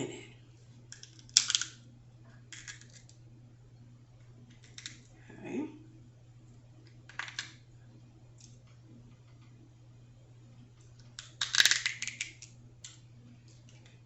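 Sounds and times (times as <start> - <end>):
crab shell cracking: 0.9 - 1.8, 2.5 - 3.2, 4.5 - 5.1, 11.0 - 13.0.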